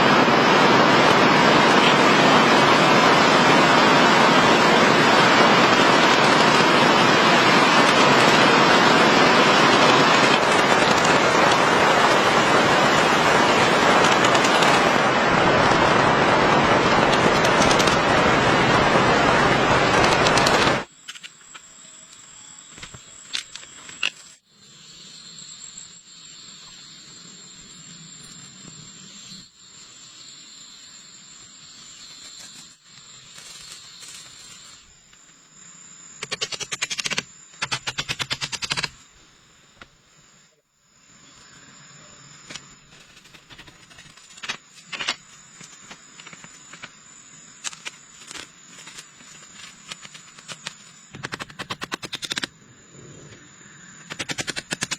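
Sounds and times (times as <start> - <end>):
steady rain hissing: 0.0 - 54.9
rapid clicking and rattling: 5.2 - 15.0, 16.9 - 18.2, 36.2 - 39.0, 47.6 - 52.5, 54.1 - 54.9.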